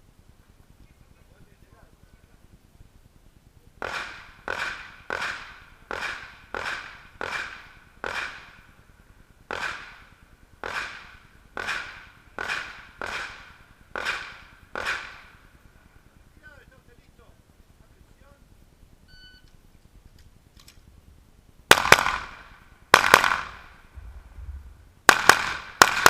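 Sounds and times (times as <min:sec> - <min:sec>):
pistol shots: 0:03.8 - 0:08.6, 0:09.5 - 0:15.3, 0:21.7 - 0:24.2, 0:25.1 - 0:26.0.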